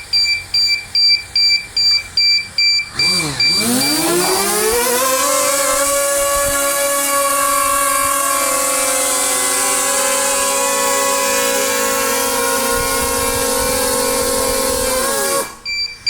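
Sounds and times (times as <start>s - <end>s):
drone short beeps: 0.0s - 4.6s, 15.6s - 16.0s
drone propellers whining: 2.6s - 16.0s.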